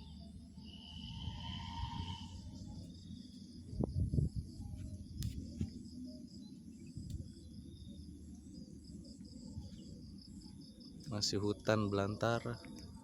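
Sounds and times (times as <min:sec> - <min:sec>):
low rumble: 0:00.0 - 0:06.0
steady high buzz: 0:00.0 - 0:12.4
crickets chirping: 0:00.0 - 0:13.0.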